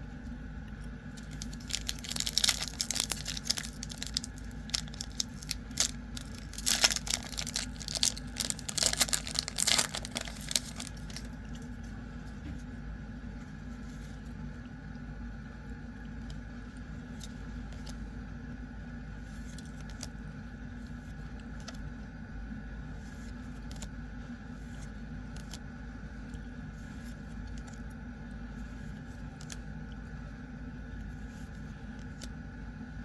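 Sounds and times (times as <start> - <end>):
low background hum: 0.0 - 33.0
trading cards clicking and rustling: 1.2 - 11.4.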